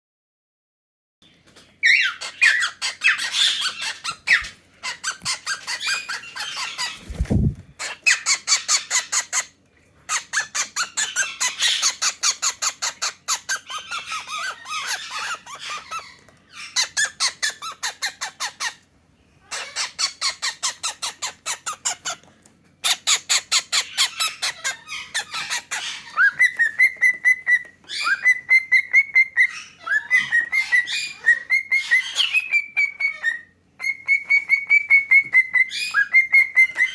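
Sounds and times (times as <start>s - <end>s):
cockatiels harsh chatter: 1.5s - 18.8s, 19.4s - 36.9s.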